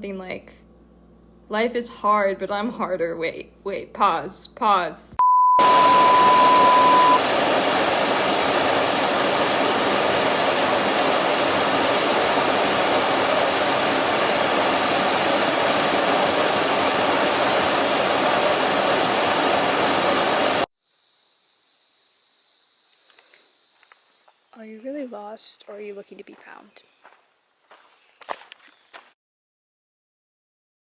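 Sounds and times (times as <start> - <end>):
beep tone: 5.2 - 7.2
loud static hiss: 5.6 - 20.7.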